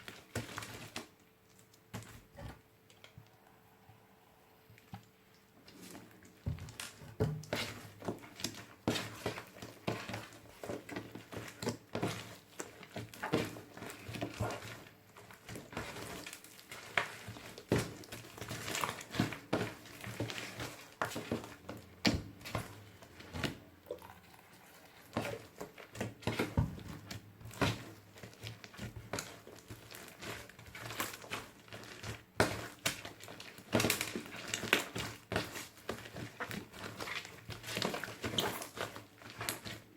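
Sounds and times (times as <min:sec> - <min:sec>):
slime squishing with wet clicks: 0:00.0 - 0:03.6.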